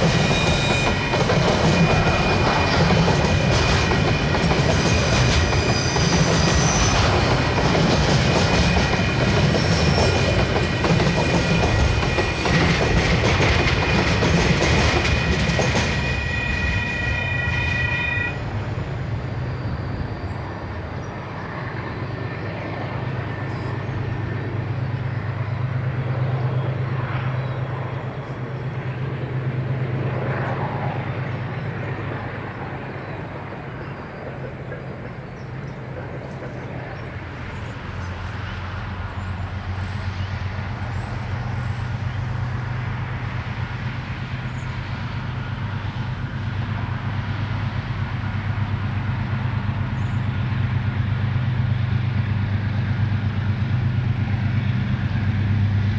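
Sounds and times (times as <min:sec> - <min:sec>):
diesel locomotive engine drone: 0:00.0 - 0:55.9.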